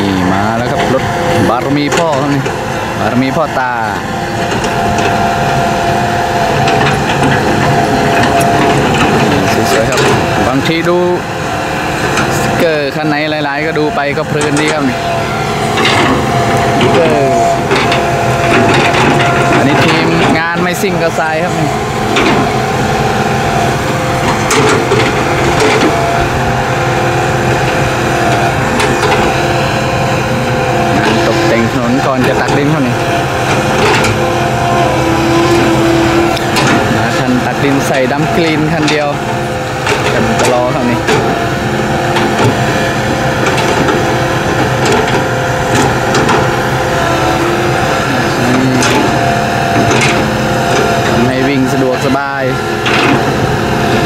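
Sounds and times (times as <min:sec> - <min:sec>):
bucket and tracks clanking: 0:00.0 - 0:54.0
excavator diesel engine running: 0:00.0 - 0:54.0
wavering hydraulic tones: 0:00.0 - 0:54.0.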